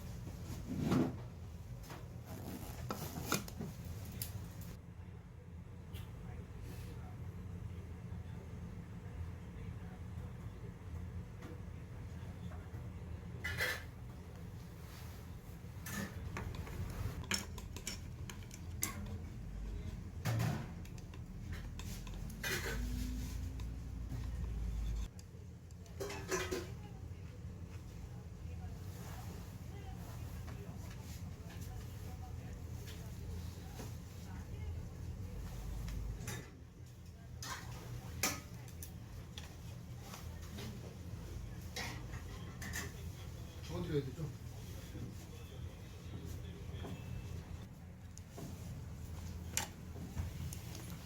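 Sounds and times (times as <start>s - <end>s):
dishes and utensils clinking: 21.4s - 24.8s, 26.0s - 26.8s.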